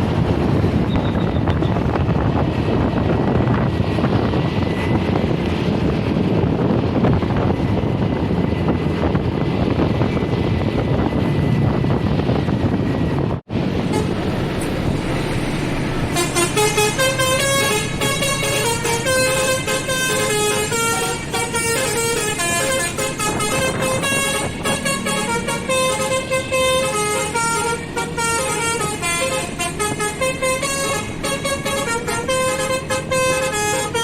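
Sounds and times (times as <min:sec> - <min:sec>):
vehicle rumbling on road: 0:00.0 - 0:34.0
musical bus horn tune: 0:13.8 - 0:14.4, 0:15.8 - 0:34.0.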